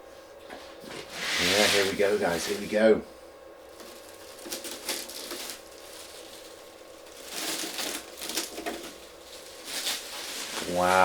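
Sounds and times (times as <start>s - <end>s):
packaging rustling and crinkling: 3.7s - 11.0s.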